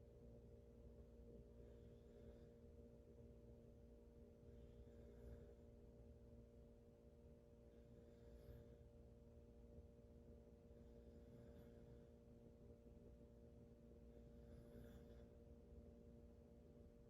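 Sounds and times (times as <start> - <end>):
low electrical hum: 0.0 - 17.0
woman breathing in sleep: 4.4 - 5.8, 14.1 - 15.4.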